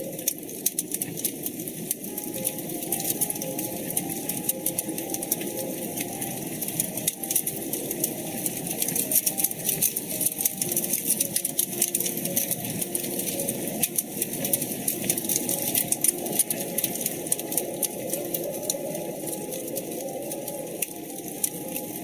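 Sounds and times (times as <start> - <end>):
wood fire crackling: 0.0 - 22.0.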